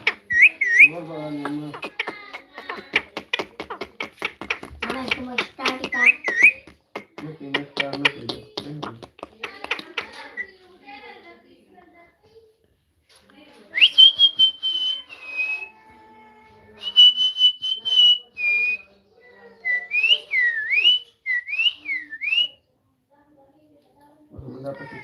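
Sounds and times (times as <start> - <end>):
parrot whistling: 0.0 - 3.4, 4.0 - 8.2, 13.8 - 15.9, 16.8 - 18.9, 19.6 - 22.6.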